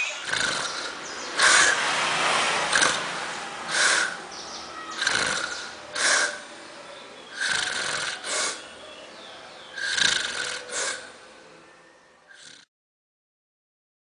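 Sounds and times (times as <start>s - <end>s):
man snoring: 0.2s - 1.9s, 2.6s - 3.1s, 3.7s - 4.3s, 5.0s - 6.6s, 7.3s - 8.7s, 9.7s - 11.2s, 12.3s - 12.7s
quiet breathing: 5.4s - 8.8s, 9.7s - 12.7s.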